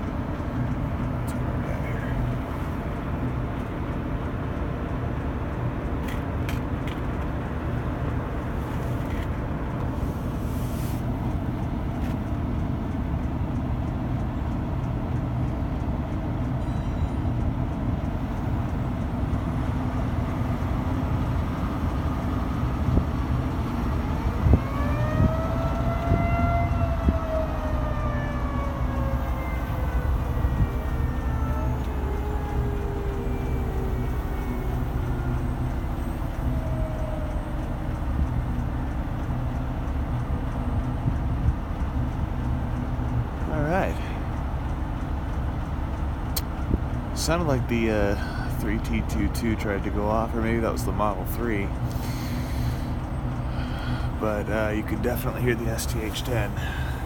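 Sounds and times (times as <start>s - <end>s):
outdoor warning siren: 2.2s - 57.0s
faint low siren tone: 16.4s - 19.1s, 21.5s - 43.2s.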